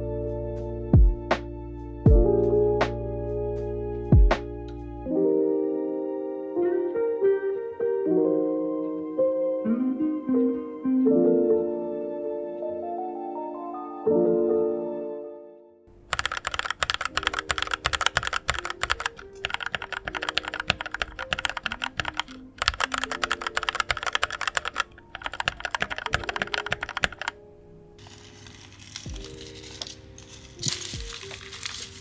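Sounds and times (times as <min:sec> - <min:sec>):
soft background music: 0:00.0 - 0:32.0
mechanical keyboard typing: 0:16.1 - 0:27.4.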